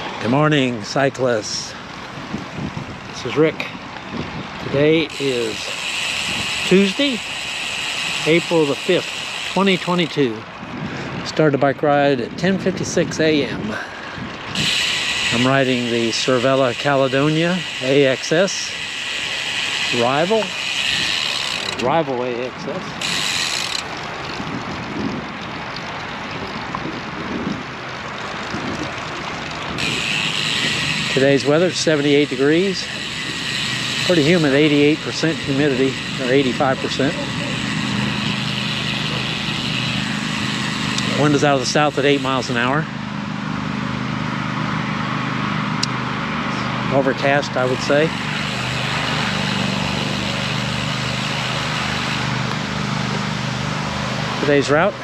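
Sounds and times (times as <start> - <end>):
bicycle road noise: 0.0 - 55.0
wind: 0.0 - 55.0
wind rush: 1.4 - 5.5, 10.4 - 11.6, 24.0 - 25.6, 26.2 - 30.9
bike tyres rolling on road: 1.7 - 4.8, 18.7 - 41.3.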